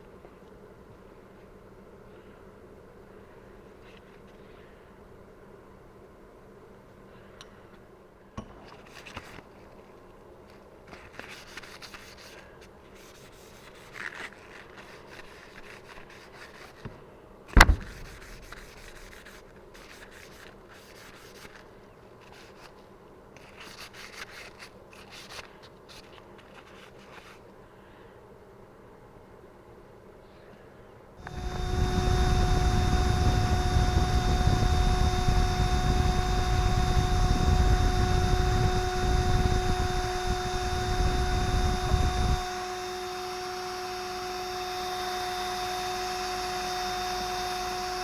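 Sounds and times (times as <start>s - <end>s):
hand rubbing and scraping surface: 10.9s - 16.9s, 17.6s - 27.5s, 31.2s - 42.7s
sharp knock: 17.6s - 18.4s.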